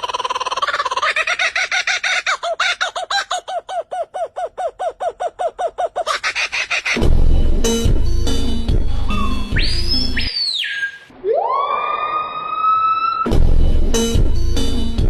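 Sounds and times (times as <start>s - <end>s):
bird calling in fast notes: 0.0s - 7.0s, 9.1s - 11.1s.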